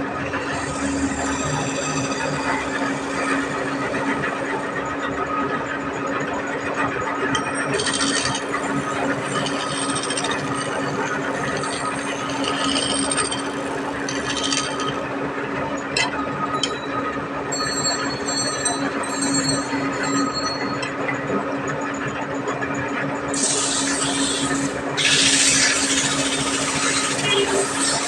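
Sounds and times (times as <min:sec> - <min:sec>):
woodworking machine humming: 0:00.0 - 0:16.8, 0:23.1 - 0:28.0.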